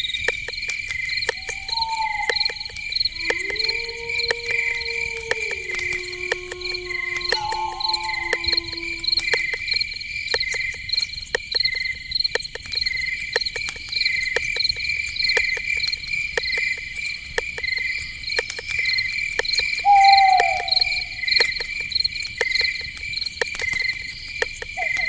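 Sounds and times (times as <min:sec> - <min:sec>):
crickets chirping: 0:00.0 - 0:25.0
sharp ticking clicks: 0:00.0 - 0:25.0
short falling animal call: 0:01.4 - 0:09.6, 0:19.9 - 0:21.3.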